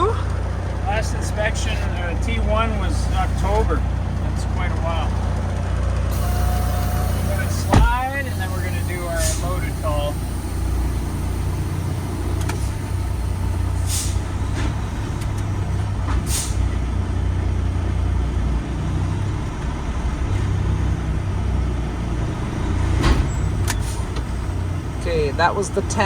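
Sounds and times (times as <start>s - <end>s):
truck diesel engine running: 0.0s - 26.0s
air brake hisses: 6.1s - 16.8s, 23.1s - 24.7s.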